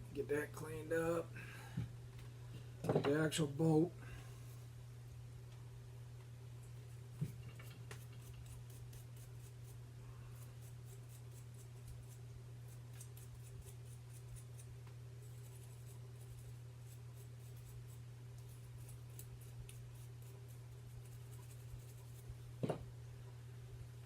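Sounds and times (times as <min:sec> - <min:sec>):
steady low hum: 0:00.0 - 0:24.0
rapid scratching strokes: 0:10.4 - 0:22.3.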